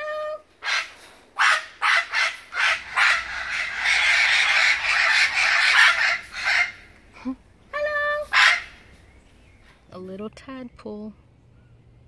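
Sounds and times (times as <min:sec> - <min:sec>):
parrots squawking: 0:00.6 - 0:07.2, 0:07.9 - 0:09.0.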